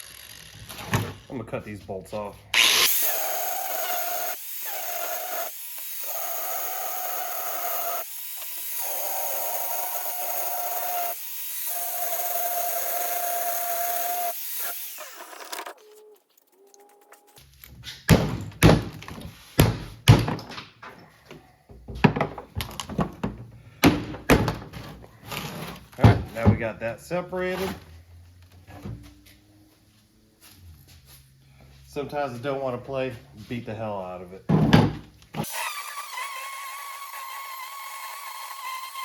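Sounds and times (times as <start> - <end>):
power tool cutting metal: 0.0 - 0.7, 2.6 - 15.8, 35.4 - 39.0.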